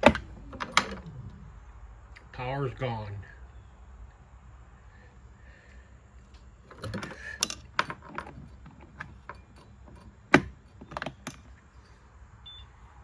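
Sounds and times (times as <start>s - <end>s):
small metal parts jingling: 0.0s - 1.4s, 6.2s - 12.0s.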